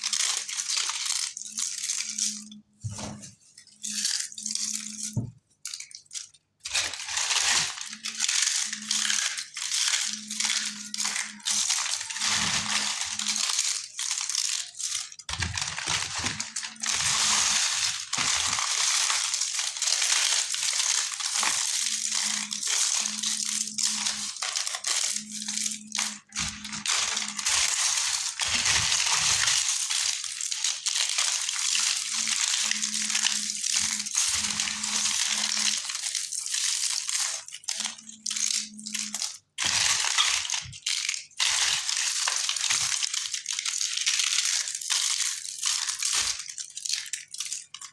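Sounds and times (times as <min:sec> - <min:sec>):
clay chunks crunching: 0:05.7 - 0:37.9.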